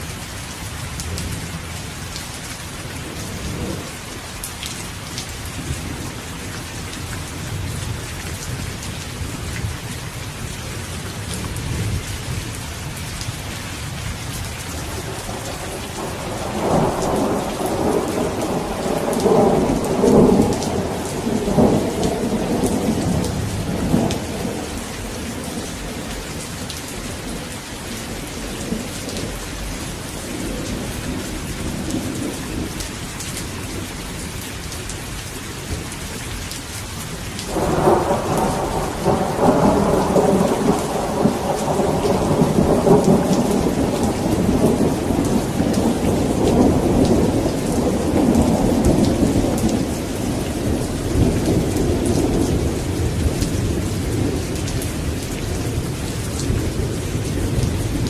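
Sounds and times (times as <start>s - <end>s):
heavy rain: 0.0s - 58.0s
rolling thunder: 14.8s - 27.5s, 37.5s - 58.0s.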